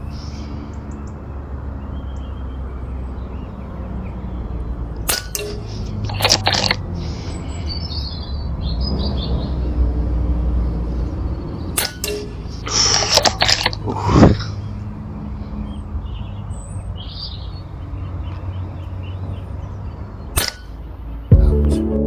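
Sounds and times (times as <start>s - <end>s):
bird chirping: 0.0s - 21.4s
air rifle shots: 11.8s - 14.5s, 20.4s - 20.8s.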